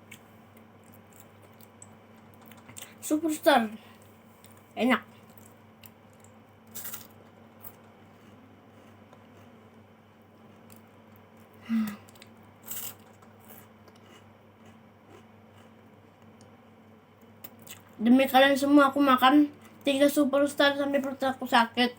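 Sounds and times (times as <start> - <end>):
quiet chewing: 0.0 - 3.0, 3.9 - 6.4, 7.1 - 16.6, 17.2 - 18.0
faint steady hum: 0.0 - 21.9.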